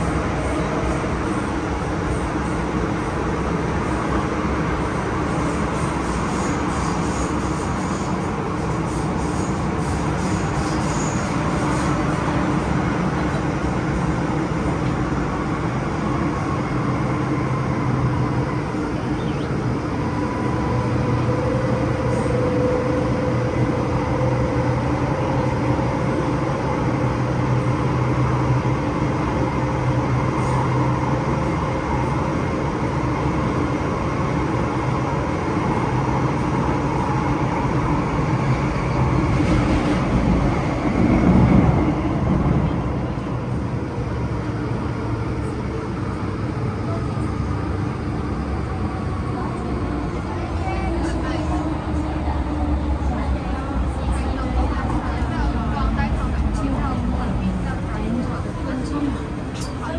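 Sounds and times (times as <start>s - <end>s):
train wheels rumbling on rail: 0.0s - 59.9s.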